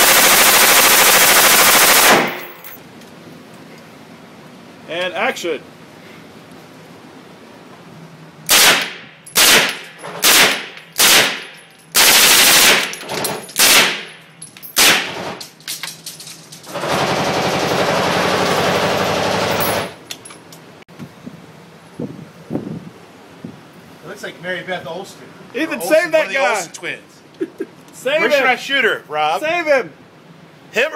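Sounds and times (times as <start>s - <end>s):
gunshots: 0.0s - 2.6s, 8.5s - 12.9s, 13.6s - 14.1s, 14.8s - 15.4s.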